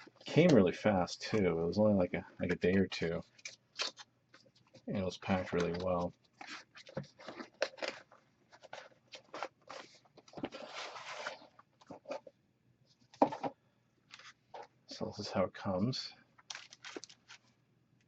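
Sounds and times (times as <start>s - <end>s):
packaging crinkling: 3.3s - 12.2s, 16.4s - 17.5s
packaging tearing: 5.3s - 9.9s, 16.5s - 17.5s.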